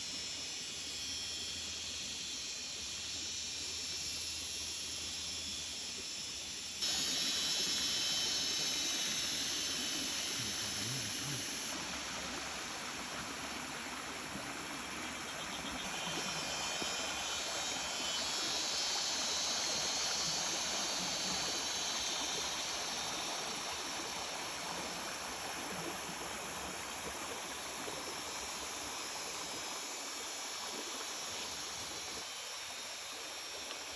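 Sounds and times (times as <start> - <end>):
stream water rushing: 6.8 - 33.9.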